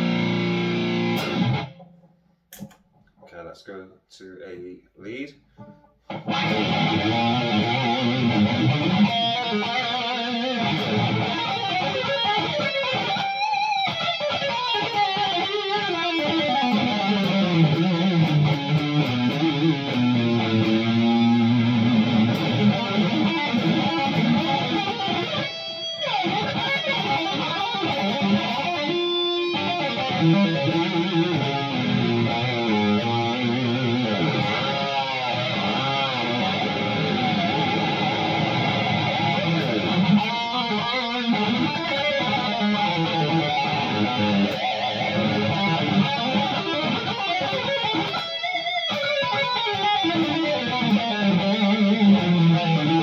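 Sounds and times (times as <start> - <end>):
distorted electric guitar lead: 0.0 - 2.7, 5.6 - 53.0.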